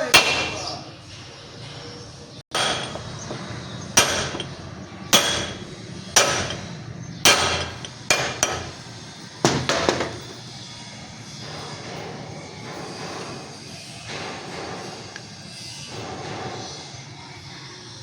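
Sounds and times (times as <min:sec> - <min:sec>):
hammer striking metal: 0:00.0 - 0:00.8, 0:02.5 - 0:10.5.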